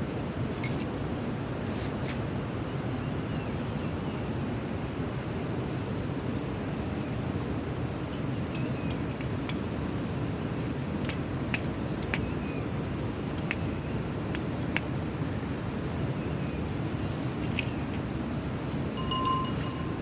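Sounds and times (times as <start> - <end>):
sharp clicks and clinks: 8.1 - 10.0, 10.6 - 12.3, 13.4 - 13.7, 19.0 - 20.0.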